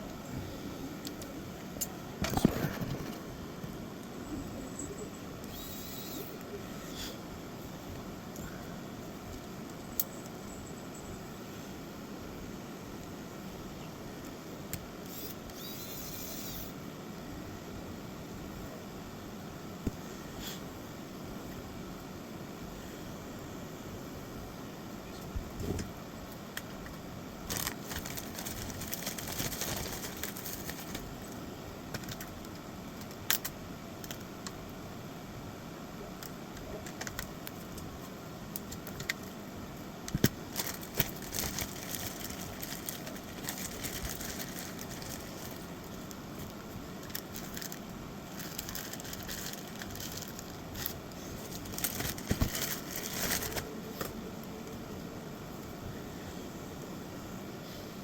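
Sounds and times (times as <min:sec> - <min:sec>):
background hiss: 0:00.0 - 0:58.0
crinkling: 0:26.6 - 0:34.6, 0:36.2 - 0:39.4, 0:40.0 - 0:54.2.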